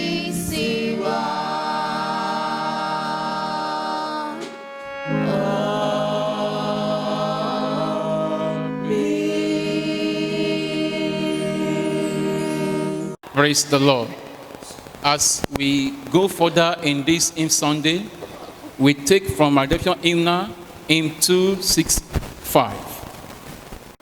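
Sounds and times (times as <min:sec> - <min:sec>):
choir singing held chords: 0:00.0 - 0:13.2.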